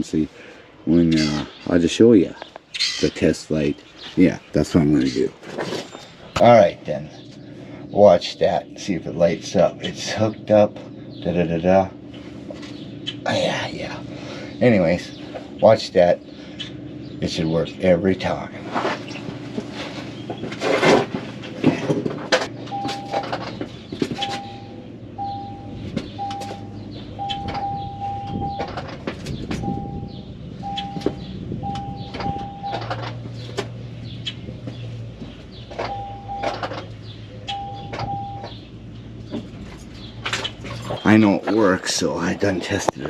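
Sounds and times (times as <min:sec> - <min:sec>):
steady low hum: 0:03.1 - 0:43.0
hands handling wiring and parts: 0:18.6 - 0:24.6
short electronic beeps: 0:22.7 - 0:23.2, 0:24.2 - 0:28.8, 0:29.6 - 0:32.9, 0:35.8 - 0:36.6, 0:37.4 - 0:38.5.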